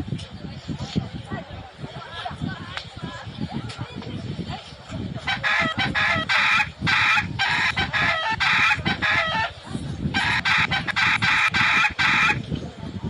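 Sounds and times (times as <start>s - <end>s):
chicken harsh calls: 5.2s - 9.6s, 10.2s - 12.4s.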